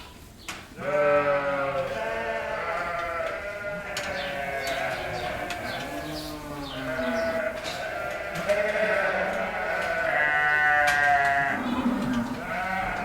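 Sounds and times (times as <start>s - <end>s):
sheep bleating: 0.8s - 13.0s.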